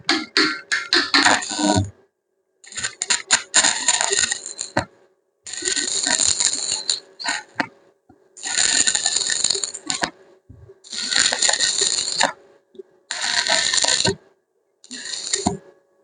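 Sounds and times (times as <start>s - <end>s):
harsh hissing metalwork on steel: 2.7s - 4.8s, 5.5s - 7.6s, 8.4s - 10.1s, 10.9s - 12.4s, 13.1s - 14.2s, 14.9s - 15.6s.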